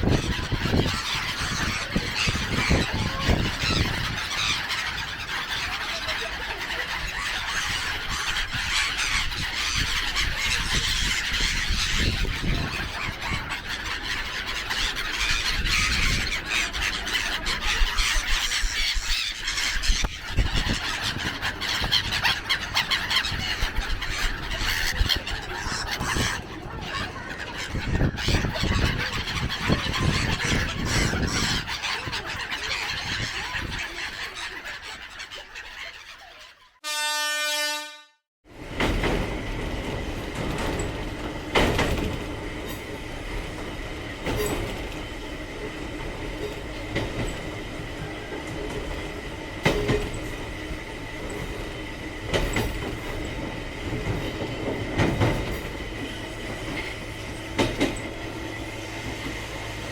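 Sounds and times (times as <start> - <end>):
train rolling on rails: 0.0 - 34.9, 38.5 - 59.9
train horn blast: 36.8 - 38.2
rail joint clacks: 38.5 - 59.9.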